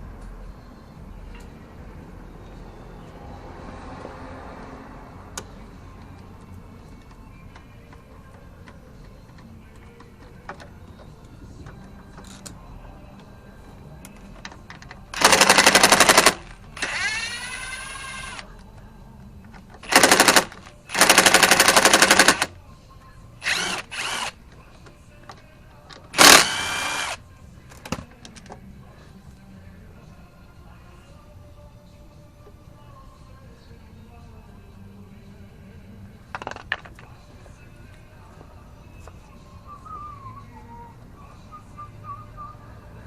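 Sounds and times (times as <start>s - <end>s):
impact wrench hammering: 19.9s - 22.5s, 26.2s - 27.2s
impact wrench spinning whine: 26.2s - 27.2s.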